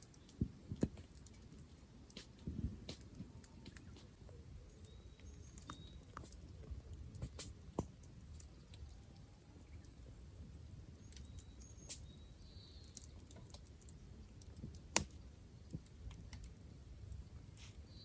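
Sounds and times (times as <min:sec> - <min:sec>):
small clicks and light tapping: 0:00.0 - 0:17.8
sharp crack: 0:14.9 - 0:15.2.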